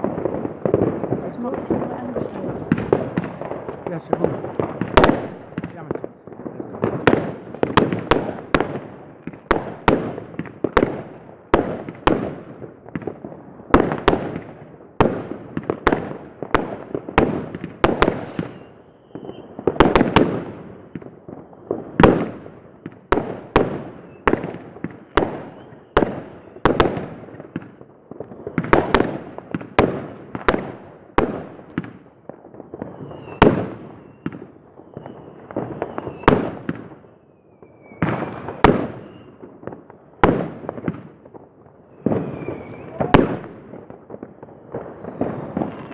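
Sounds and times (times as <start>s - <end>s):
fireworks banging with echo: 0.0s - 45.9s
faint high whistle: 18.4s - 19.6s, 33.0s - 33.4s, 34.9s - 36.3s, 39.0s - 39.4s, 42.2s - 43.2s.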